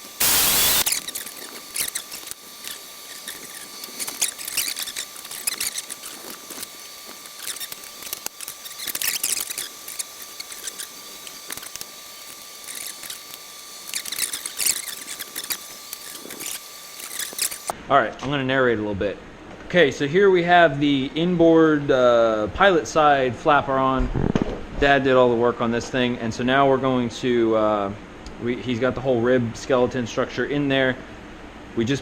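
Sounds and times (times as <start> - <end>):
drill running: 0.0 - 17.7
faint high whine: 0.0 - 17.7
metal parts clicking and scraping: 0.2 - 17.7.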